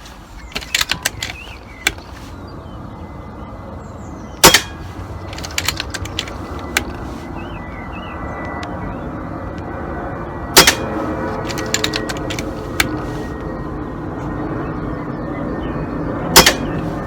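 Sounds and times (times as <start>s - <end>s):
rifle action clicking: 0.4s - 2.2s, 4.4s - 7.0s, 10.6s - 13.0s, 16.4s - 16.9s
air rifle shot: 4.4s - 7.0s, 10.6s - 13.0s, 16.4s - 17.0s.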